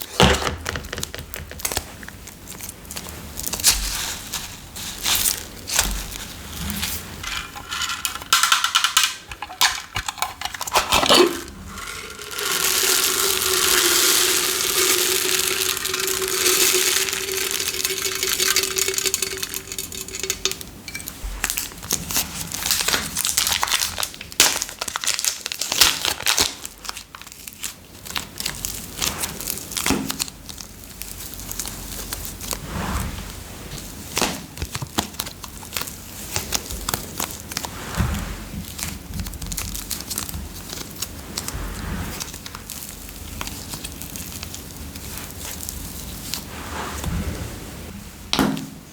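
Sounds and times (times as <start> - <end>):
crinkling and crackling handling: 0.0 - 32.6
steady hiss: 3.6 - 22.0.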